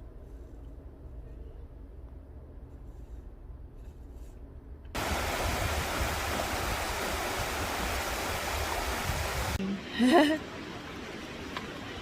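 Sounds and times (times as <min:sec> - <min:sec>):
faint low rumble: 0:00.0 - 0:06.8
rushing flowing water: 0:05.0 - 0:12.0.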